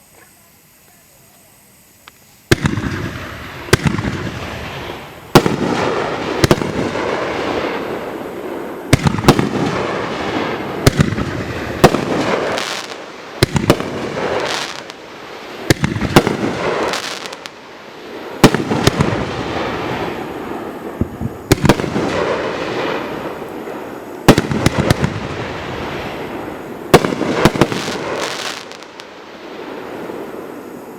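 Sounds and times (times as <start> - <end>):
hissing crackling fireworks: 0.0 - 30.9
firework bangs: 2.5 - 30.9.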